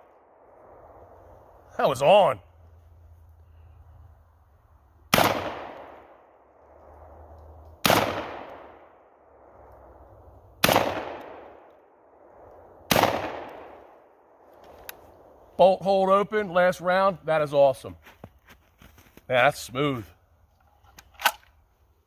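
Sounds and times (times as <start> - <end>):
shotgun shots: 5.1 - 6.0, 7.8 - 8.8, 10.6 - 11.6, 12.9 - 13.8.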